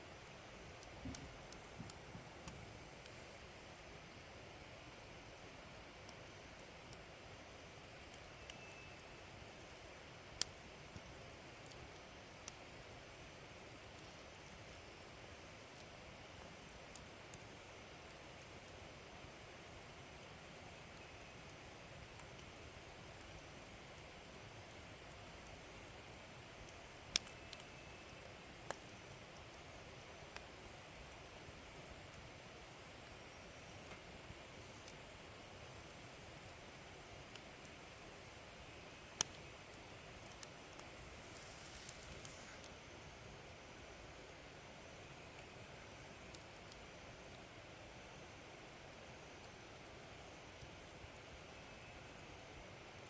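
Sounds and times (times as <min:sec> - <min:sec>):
log fire crackling: 0:00.0 - 0:53.0
burning wood popping: 0:00.2 - 0:05.1, 0:05.7 - 0:51.6
fire pops: 0:00.7 - 0:03.6, 0:25.1 - 0:44.0.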